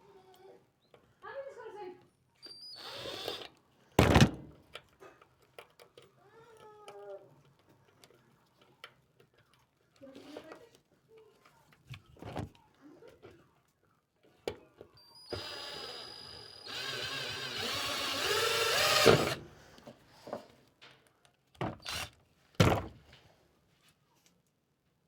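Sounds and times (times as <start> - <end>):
power drill running: 2.8 - 3.5, 15.2 - 19.5, 21.8 - 22.1.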